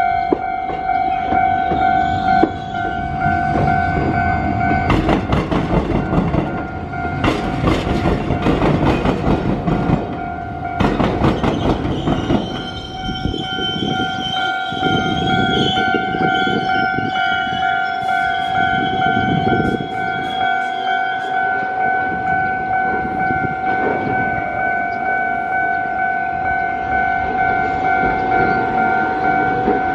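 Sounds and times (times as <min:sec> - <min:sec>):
level crossing alarm dinging: 0:00.0 - 0:05.3, 0:09.9 - 0:29.9
train rumbling: 0:00.0 - 0:29.9
train wheels clattering over crossing: 0:00.2 - 0:25.2.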